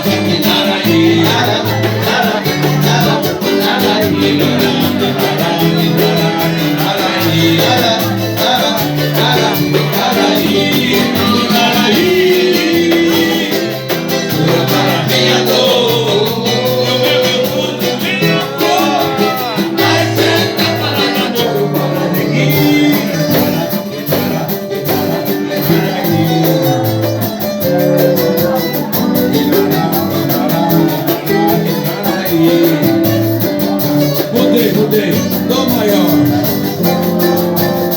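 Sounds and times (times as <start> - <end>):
band music with singer: 0.0 - 37.9.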